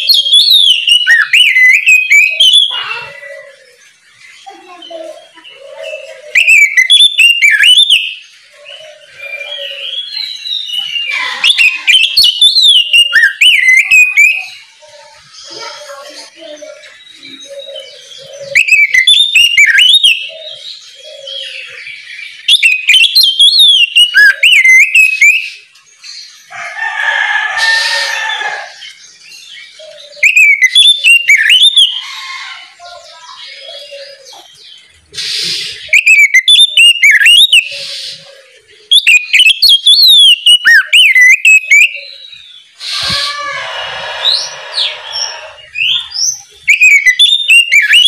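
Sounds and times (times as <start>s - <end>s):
bird singing whistled phrases: 0.0s - 3.5s, 5.6s - 15.6s, 16.2s - 25.7s, 29.7s - 32.1s, 35.2s - 48.0s
harsh rasping bird calls: 0.0s - 48.0s.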